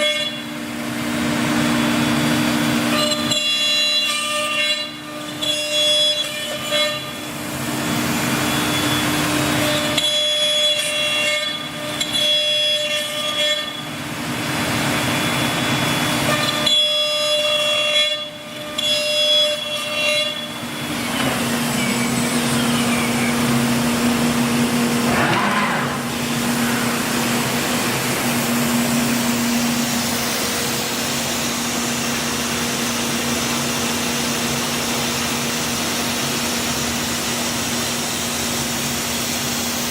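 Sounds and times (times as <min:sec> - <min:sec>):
machine whine: 0:08.0 - 0:34.3
low machine hum: 0:20.6 - 0:31.8.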